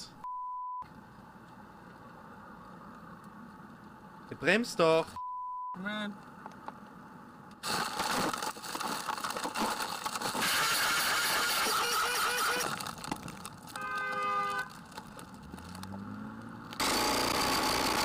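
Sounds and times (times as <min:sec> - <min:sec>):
car cabin and road noise: 0:00.0 - 0:08.4, 0:11.8 - 0:18.0
car horn: 0:10.4 - 0:12.7, 0:13.7 - 0:14.8
engine revving: 0:15.4 - 0:18.0.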